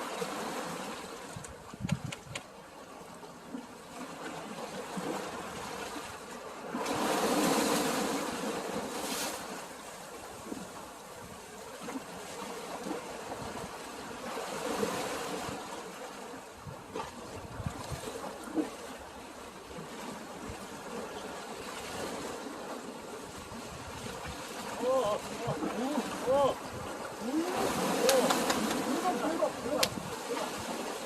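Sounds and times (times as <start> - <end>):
sea waves washing: 0.0 - 31.0
water sloshing: 19.8 - 31.0.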